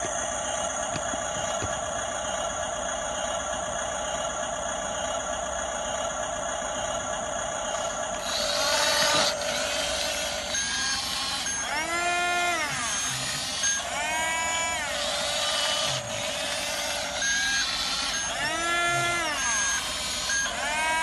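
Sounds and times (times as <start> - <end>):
electric motors whining: 0.0 - 21.0.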